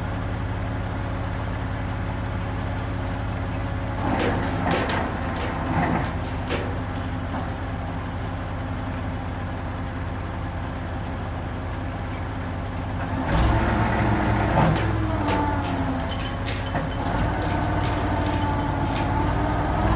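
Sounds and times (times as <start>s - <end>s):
diesel engine running: 0.0s - 19.9s
short knocks: 4.0s - 7.5s, 14.5s - 19.9s.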